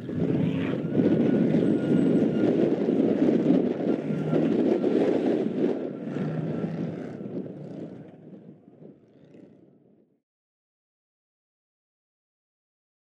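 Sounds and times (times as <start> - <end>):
wind on microphone: 0.0 - 10.1.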